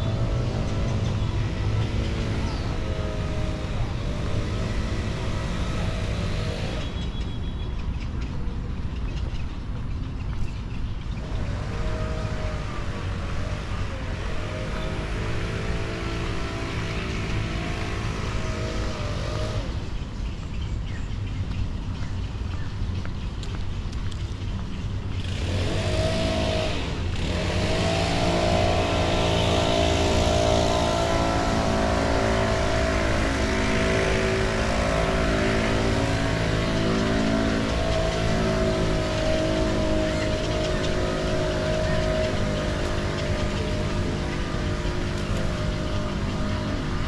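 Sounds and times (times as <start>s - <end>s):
motor revving: 0.0s - 7.0s, 11.2s - 20.0s, 25.2s - 47.0s.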